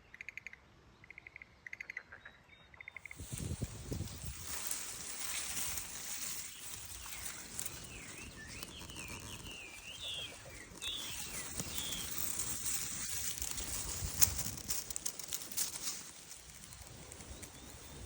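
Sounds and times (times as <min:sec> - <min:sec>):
clicks and rustling: 0:03.1 - 0:18.0
songbird warbling: 0:04.7 - 0:14.5.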